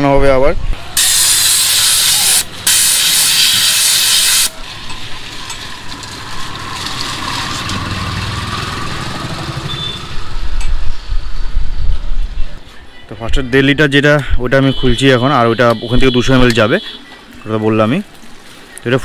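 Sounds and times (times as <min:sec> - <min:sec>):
compressed air blow gun hissing: 0:01.0 - 0:04.6.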